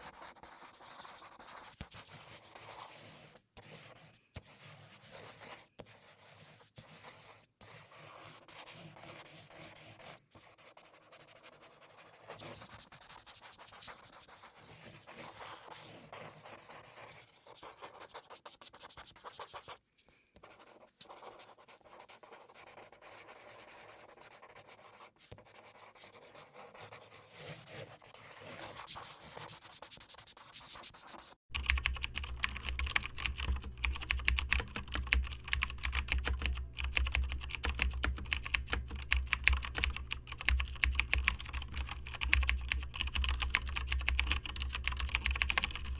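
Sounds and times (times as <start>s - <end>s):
computer keyboard typing: 31.5s - 45.9s.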